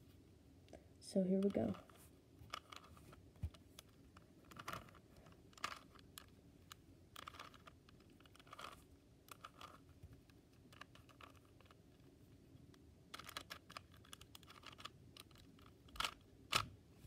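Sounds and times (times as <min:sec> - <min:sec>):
puzzle cube clicking and rattling: 0:01.3 - 0:16.7.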